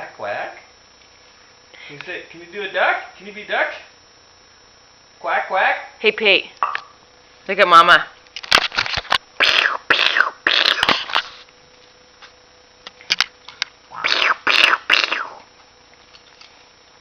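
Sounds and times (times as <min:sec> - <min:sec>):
breathy vocal bursts: 0:09.4 - 0:11.0, 0:13.9 - 0:15.4.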